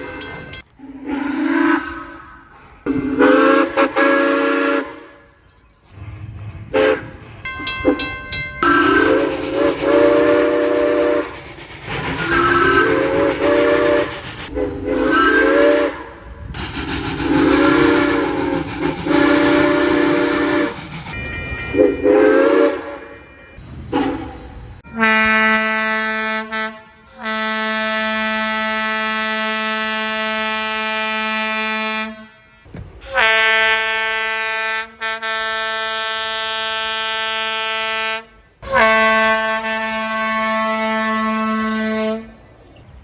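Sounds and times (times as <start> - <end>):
steam locomotive whistle blasts: 0.0 - 5.5, 6.7 - 11.4, 12.0 - 16.6, 17.2 - 24.3, 24.9 - 42.5
steam hiss: 8.8 - 22.5.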